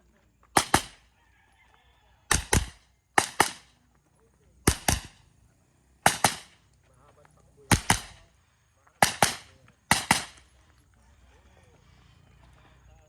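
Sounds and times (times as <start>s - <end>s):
gunshots in quick pairs: 0.5s - 1.1s, 2.3s - 3.8s, 4.6s - 5.3s, 6.0s - 6.6s, 7.7s - 8.3s, 9.0s - 10.5s.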